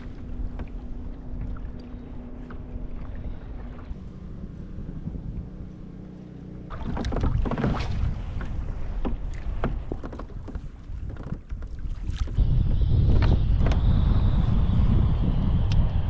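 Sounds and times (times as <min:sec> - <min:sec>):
water splashing against kayak: 0:00.0 - 0:12.5
wind rumble on microphone: 0:00.0 - 0:16.0.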